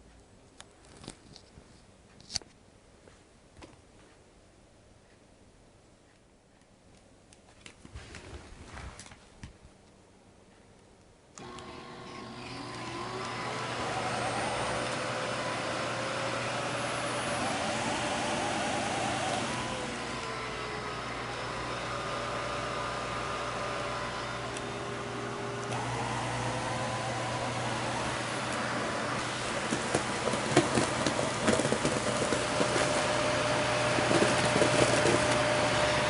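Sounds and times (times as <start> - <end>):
vacuum cleaner motor running: 11.4 - 36.0.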